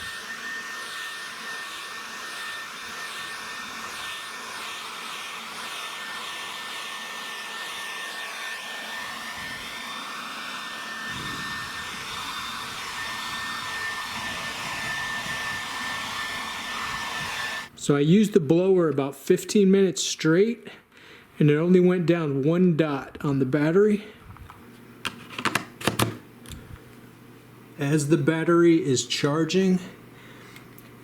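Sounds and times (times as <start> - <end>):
leaf blower running: 0.0 - 17.7.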